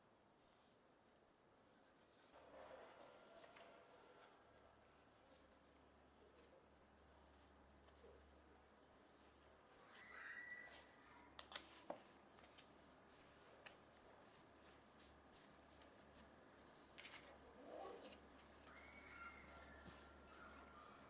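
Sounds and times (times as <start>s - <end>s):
playing cards clicking: 11.4s - 12.7s.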